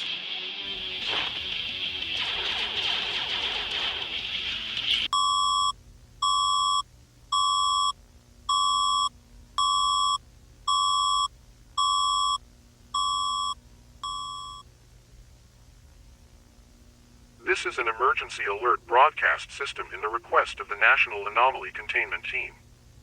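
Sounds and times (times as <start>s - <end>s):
electronic alert beeps: 13.0s - 14.6s.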